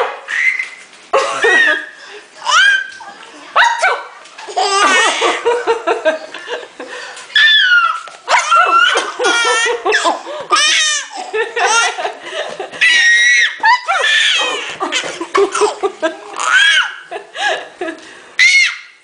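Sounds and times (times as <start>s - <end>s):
baby laughing: 1.2s - 3.0s, 4.4s - 6.4s, 7.3s - 17.1s.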